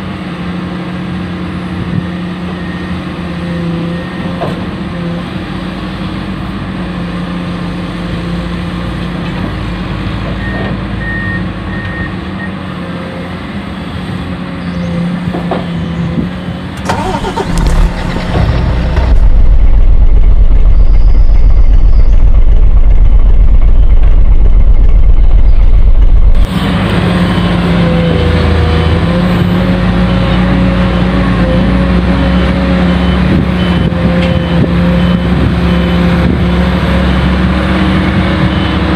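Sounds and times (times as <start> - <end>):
loud low rumble: 16.8 - 31.4.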